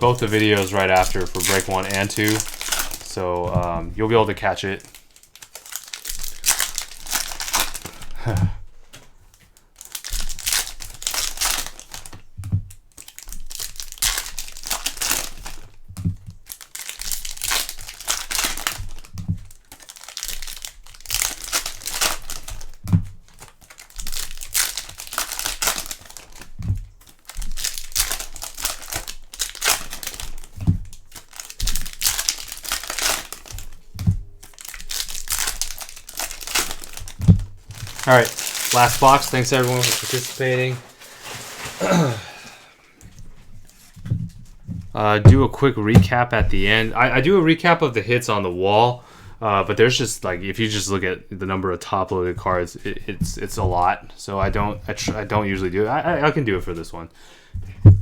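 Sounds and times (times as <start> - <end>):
foil wrappers crinkling and tearing: 0.0 - 51.0
dull knock: 57.6 - 58.0.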